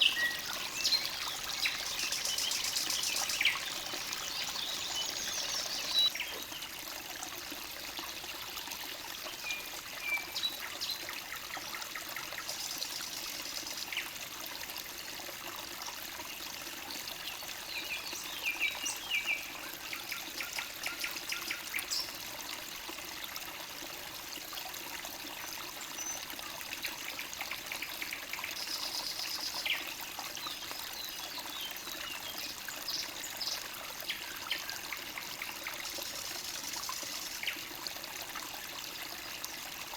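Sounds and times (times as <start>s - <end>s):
songbirds chirping: 0.0s - 6.4s
stream trickling: 0.0s - 39.9s.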